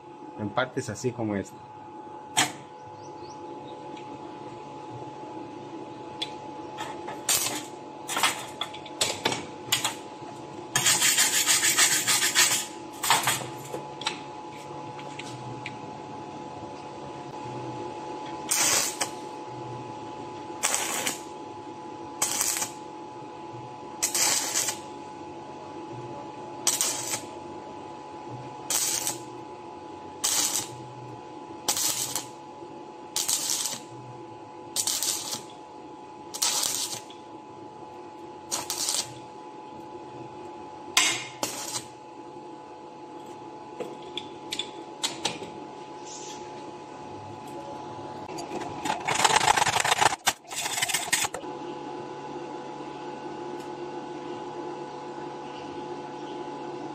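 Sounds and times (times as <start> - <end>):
welding machine hum: 2.0 - 16.6, 17.2 - 45.3, 46.0 - 51.5
welding arc bursts: 7.2 - 8.4, 10.8 - 12.8, 18.5 - 19.2, 20.6 - 21.3, 22.2 - 22.8, 24.0 - 24.8, 26.6 - 27.3, 28.6 - 29.3, 30.2 - 30.8, 31.6 - 32.4, 33.1 - 33.9, 34.7 - 35.5, 36.3 - 37.1, 38.5 - 39.2, 41.2 - 42.0.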